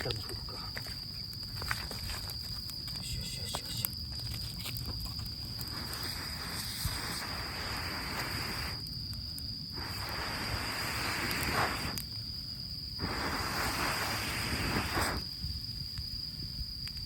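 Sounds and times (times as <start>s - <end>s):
high insect trill: 0.0s - 17.0s
person blowing on campfire: 5.6s - 8.9s, 9.7s - 12.1s, 13.0s - 15.4s.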